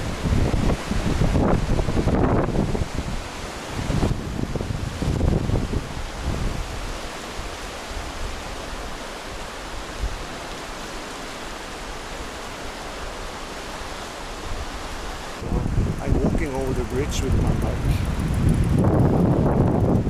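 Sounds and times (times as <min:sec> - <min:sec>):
steady rushing noise: 0:11.4 - 0:20.0.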